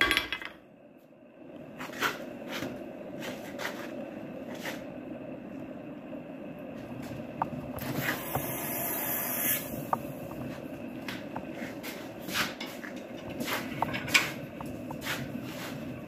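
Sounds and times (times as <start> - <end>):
steady rushing noise: 1.3 - 16.0.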